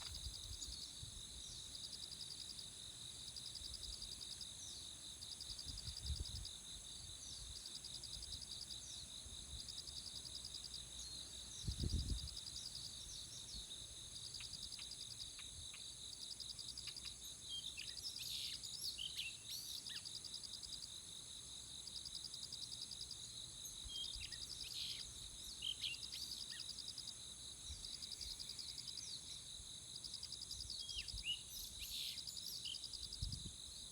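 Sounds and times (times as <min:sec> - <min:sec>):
insects chorus: 0:00.0 - 0:33.9
small birds chirping: 0:23.7 - 0:26.7.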